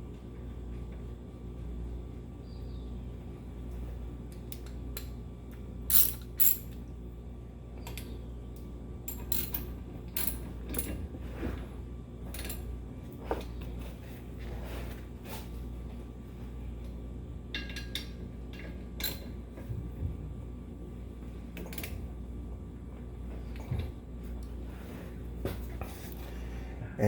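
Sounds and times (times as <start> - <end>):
metallic tool clicks and clinks: 5.9 - 6.8, 9.1 - 10.9.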